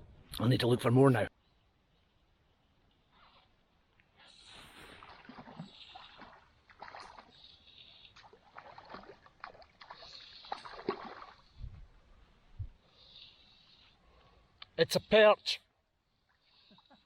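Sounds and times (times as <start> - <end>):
water splashing and sloshing: 3.2 - 12.9.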